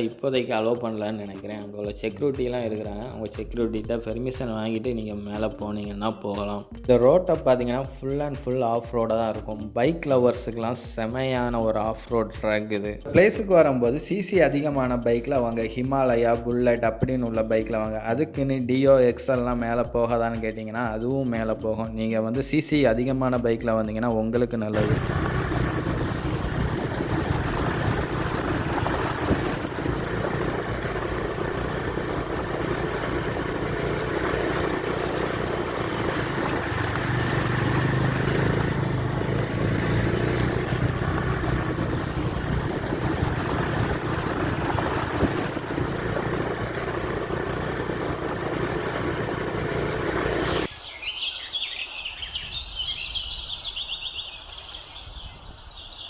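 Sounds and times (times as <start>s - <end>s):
motorcycle engine on dirt track: 24.8s - 50.7s
road and wind noise: 24.8s - 50.7s
birds chirping: 24.8s - 56.0s.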